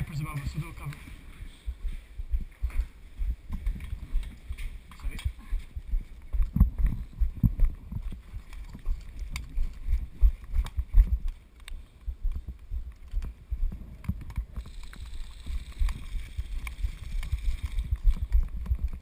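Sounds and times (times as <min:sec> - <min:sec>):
gear clicking: 0:14.1 - 0:19.0.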